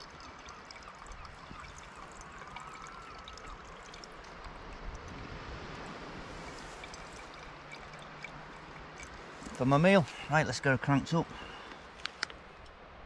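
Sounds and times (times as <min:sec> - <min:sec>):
water trickling into a container: 0:00.0 - 0:10.4.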